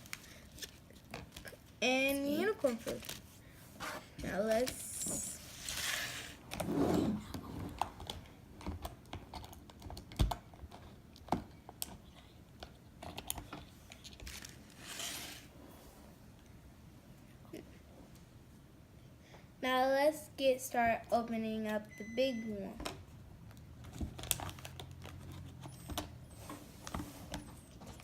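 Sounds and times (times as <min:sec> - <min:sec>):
packaging rustling: 0:02.4 - 0:03.3, 0:14.0 - 0:15.5.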